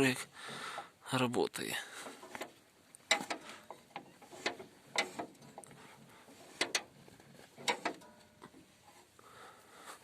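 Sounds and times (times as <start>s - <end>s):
throttle linkage metal clicks: 2.2s - 5.7s, 6.4s - 6.9s, 7.6s - 8.1s.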